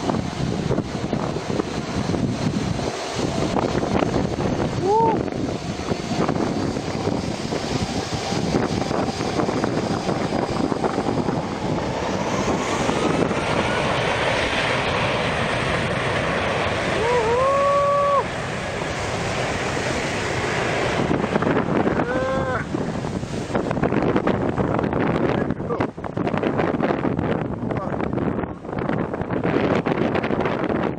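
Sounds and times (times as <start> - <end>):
wind buffeting microphone: 0.0 - 30.9
beach surf: 4.5 - 6.2, 11.4 - 26.0.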